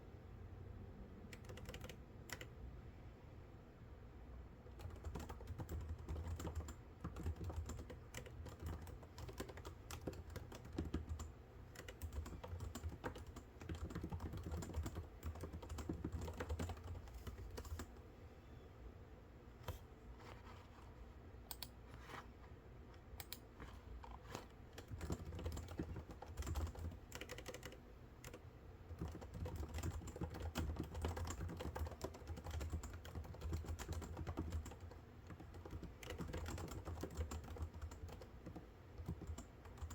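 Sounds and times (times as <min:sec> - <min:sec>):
computer keyboard typing: 0:01.3 - 0:02.5, 0:04.8 - 0:18.0, 0:21.5 - 0:21.8, 0:23.2 - 0:23.4, 0:24.0 - 0:39.9.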